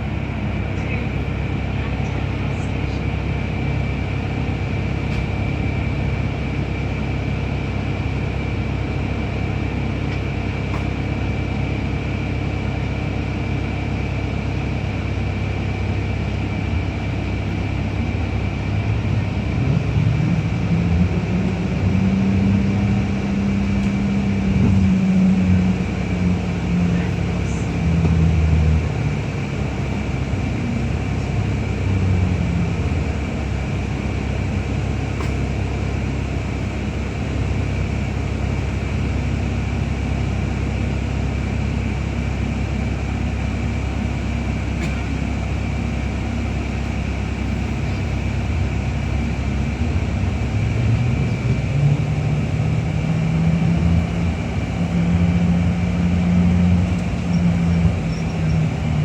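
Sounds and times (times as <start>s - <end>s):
bus drivetrain rumble: 0.0s - 59.0s
diesel engine revving: 15.5s - 39.1s, 44.8s - 59.0s.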